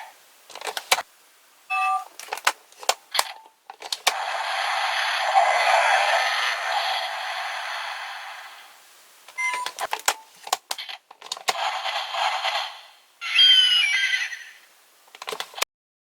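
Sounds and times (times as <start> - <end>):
toy animal sound effects: 12.0 - 14.7.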